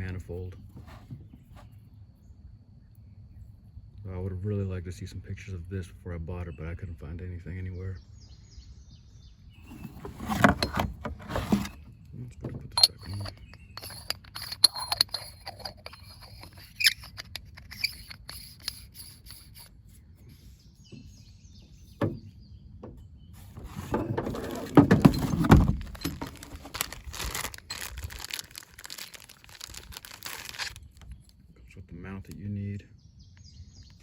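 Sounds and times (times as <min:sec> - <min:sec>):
rustling and bumping: 0:00.6 - 0:01.7, 0:09.6 - 0:31.3.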